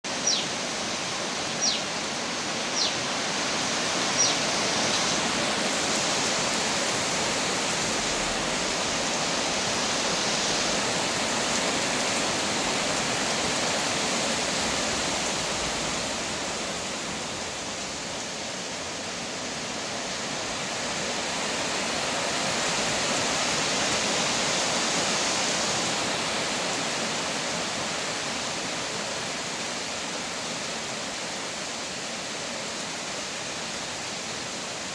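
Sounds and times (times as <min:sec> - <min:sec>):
heavy rain: 0:00.0 - 0:34.9
bird chirping: 0:00.2 - 0:00.5, 0:01.6 - 0:01.9, 0:02.7 - 0:03.0, 0:04.1 - 0:05.1.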